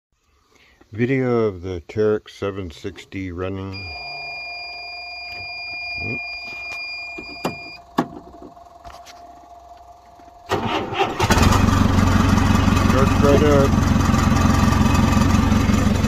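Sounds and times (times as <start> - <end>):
steady electronic tone: 3.7 - 10.4
diesel engine running: 7.2 - 16.0.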